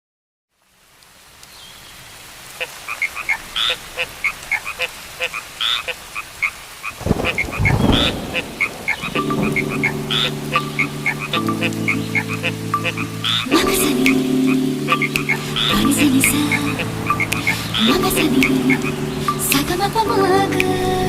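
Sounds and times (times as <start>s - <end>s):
frogs croaking: 2.5s - 19.9s
music: 9.2s - 21.0s.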